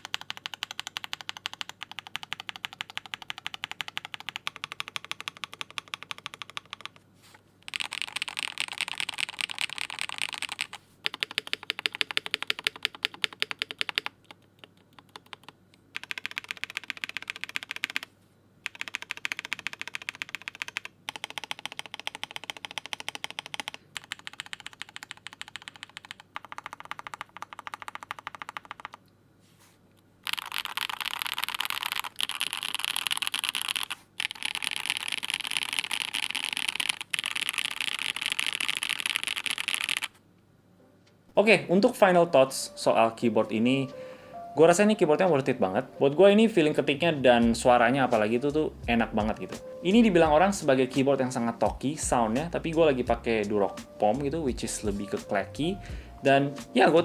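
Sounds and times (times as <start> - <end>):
clacky mechanical keyboard typing: 0.0 - 7.0, 7.7 - 29.0, 30.2 - 40.1.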